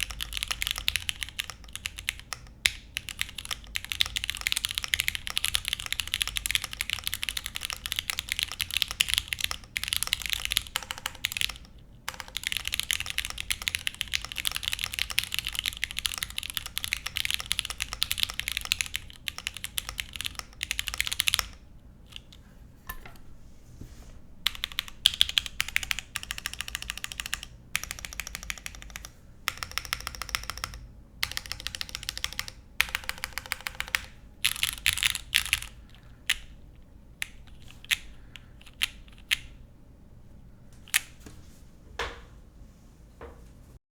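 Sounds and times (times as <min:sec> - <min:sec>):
mechanical keyboard typing: 0:00.0 - 0:22.4, 0:24.4 - 0:36.6, 0:37.2 - 0:39.6.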